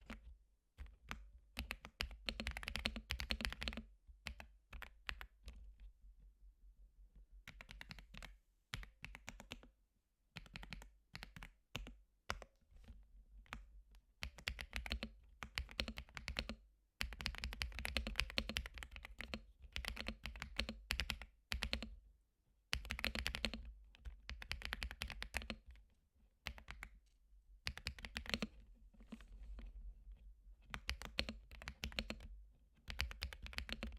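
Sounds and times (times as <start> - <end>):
typing on computer keyboard: 0.0 - 5.5, 7.5 - 9.7, 10.4 - 12.5, 14.2 - 22.0, 22.7 - 25.8, 26.4 - 27.0, 27.6 - 28.6, 30.6 - 33.9.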